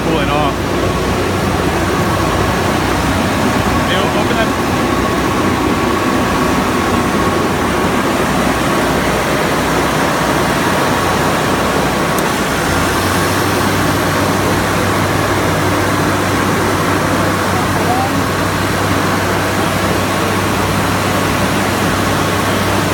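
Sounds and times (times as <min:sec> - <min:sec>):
air conditioning unit running: 0:00.0 - 0:22.9
low hum: 0:00.0 - 0:22.9.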